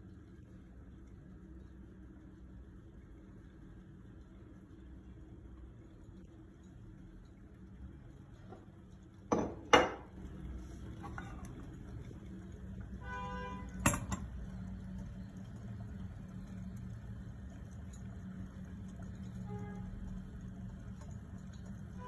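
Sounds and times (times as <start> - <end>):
low steady hum: 0.0 - 22.0
utensil knocking against dishes: 9.3 - 10.1.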